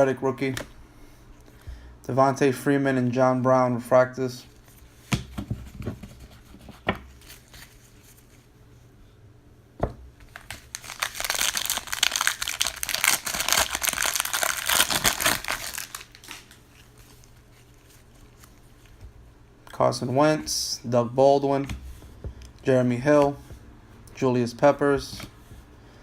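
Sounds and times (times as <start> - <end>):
plastic wrapper crinkling: 10.2 - 19.0.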